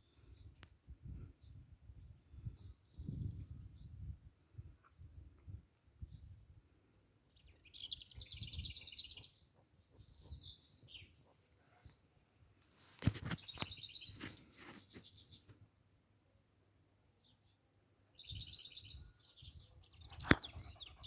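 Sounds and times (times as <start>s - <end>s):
birds chirping: 7.2s - 12.4s, 13.4s - 15.5s, 17.3s - 21.0s.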